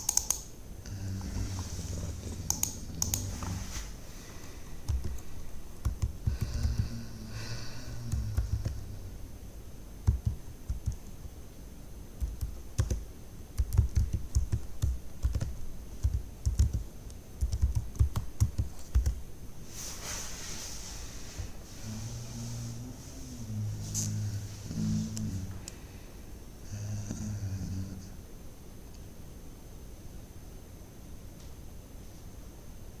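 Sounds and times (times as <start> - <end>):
computer keyboard typing: 0.0 - 0.5, 2.4 - 3.4, 4.8 - 7.0, 8.1 - 8.9, 10.0 - 11.3, 12.2 - 13.0, 13.6 - 19.2
faint high-pitched whine: 0.0 - 33.0.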